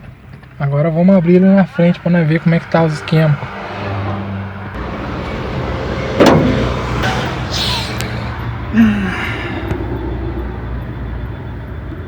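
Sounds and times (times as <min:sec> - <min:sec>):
car engine idling: 0:04.5 - 0:12.0
sharp clunk: 0:06.1 - 0:07.6.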